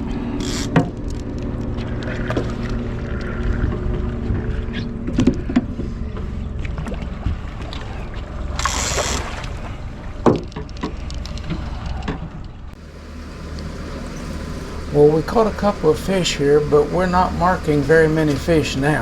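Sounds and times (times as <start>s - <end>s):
boat motor humming: 0.0s - 19.0s
knocks against boat: 10.2s - 12.3s.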